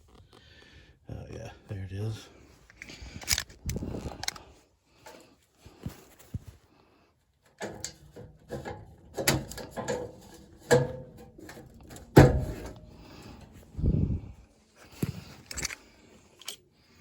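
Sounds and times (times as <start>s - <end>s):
metal parts and tools rattling: 7.5s - 13.6s, 15.3s - 16.6s.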